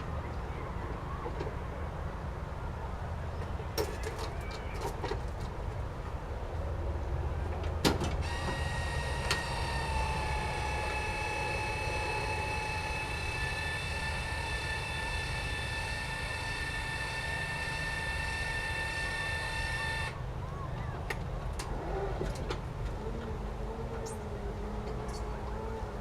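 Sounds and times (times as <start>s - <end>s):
electric motor whining: 8.2s - 20.2s.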